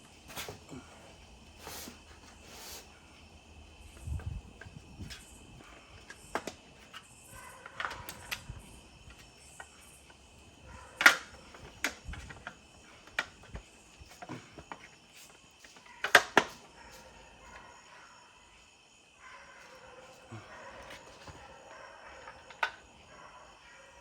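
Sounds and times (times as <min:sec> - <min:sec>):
plastic panels clicking and knocking: 0:06.0 - 0:08.5, 0:10.9 - 0:14.9, 0:15.6 - 0:16.7, 0:20.8 - 0:23.0.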